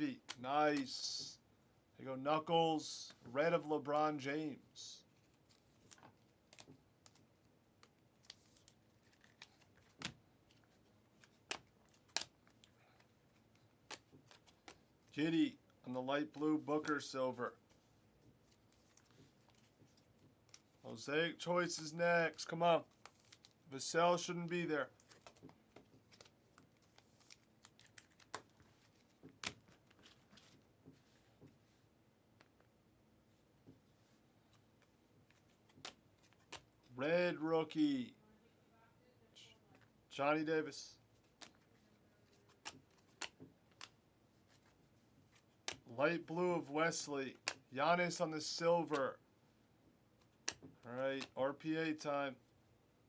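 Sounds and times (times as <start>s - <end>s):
trading cards rustling: 5.1s - 15.2s, 21.7s - 23.6s, 24.2s - 31.3s, 34.5s - 36.9s, 41.1s - 45.8s, 50.2s - 52.1s.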